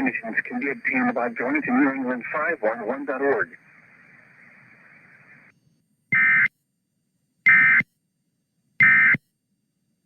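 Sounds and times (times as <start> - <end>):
faint broadcast hiss: 0.0 - 10.0
buzzing digital code bursts: 8.8 - 9.2.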